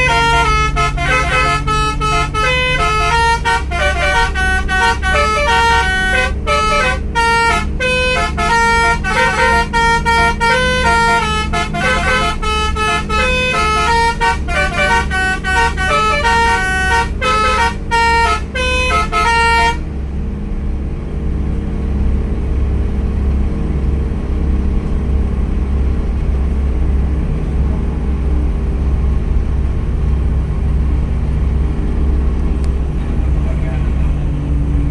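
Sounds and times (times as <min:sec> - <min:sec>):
multi-tone bus horn tune: 0:00.0 - 0:20.0, 0:32.9 - 0:34.9
bus engine humming: 0:00.0 - 0:34.9.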